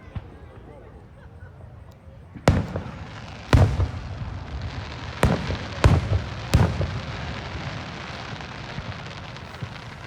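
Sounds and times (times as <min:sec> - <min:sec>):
firework shells booming: 0:02.4 - 0:10.0
fireworks crackling: 0:02.4 - 0:10.0.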